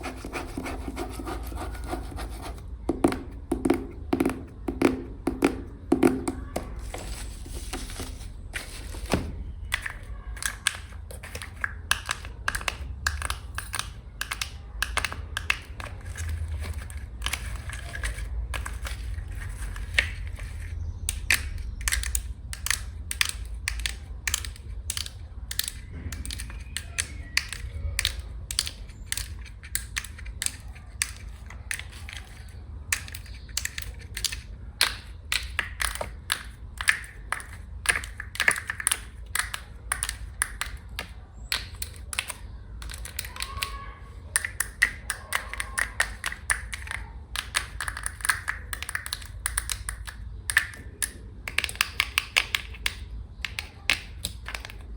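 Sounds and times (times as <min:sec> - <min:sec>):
fingernails tapping on hard surface: 0:00.1 - 0:06.9.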